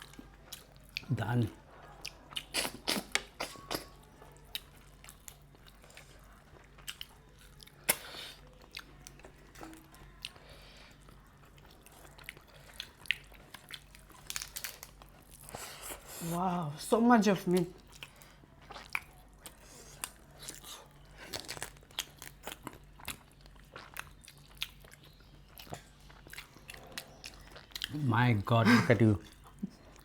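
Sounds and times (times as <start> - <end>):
chewing: 0.0 - 16.2, 17.6 - 28.0, 29.2 - 30.0
crab shell cracking: 13.9 - 15.0.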